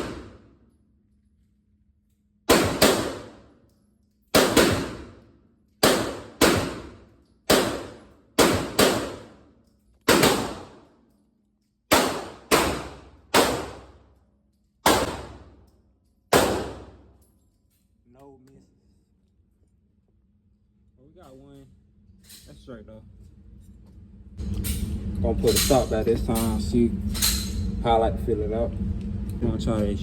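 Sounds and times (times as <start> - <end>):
gunshots echoing: 0.0 - 0.4, 2.5 - 3.5, 4.3 - 5.2, 5.8 - 9.4, 10.1 - 10.9, 11.9 - 14.0, 14.8 - 15.6, 16.3 - 17.1.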